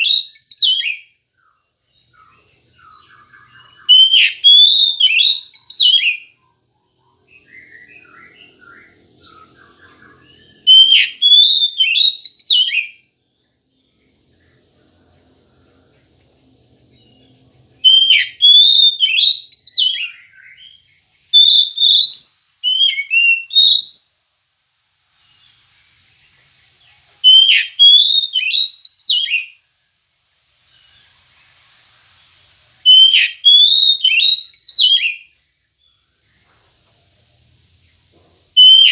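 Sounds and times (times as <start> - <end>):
bird singing whistled phrases: 0.0 - 13.0, 17.8 - 24.2, 26.4 - 29.6, 32.8 - 35.4, 38.6 - 38.9
faint soft bird notes: 0.0 - 38.9.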